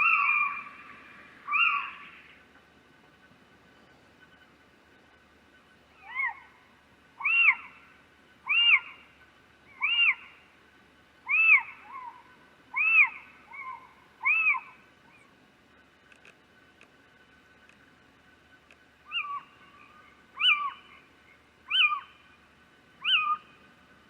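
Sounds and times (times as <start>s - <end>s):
owl hooting: 0.0s - 2.4s, 5.9s - 6.6s, 7.2s - 10.5s, 11.2s - 15.4s, 19.0s - 22.3s, 23.0s - 23.7s.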